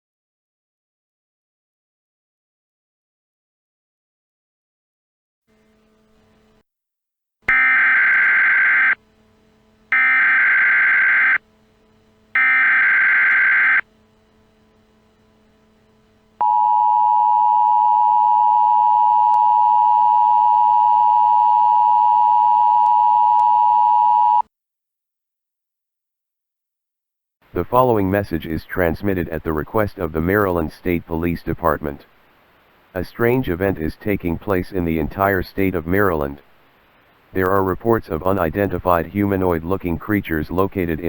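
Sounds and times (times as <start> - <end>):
digital header data bursts: 7.5 - 9.0, 9.9 - 11.4, 12.4 - 13.8
two-tone attention signal: 10.0 - 11.4, 12.4 - 13.8.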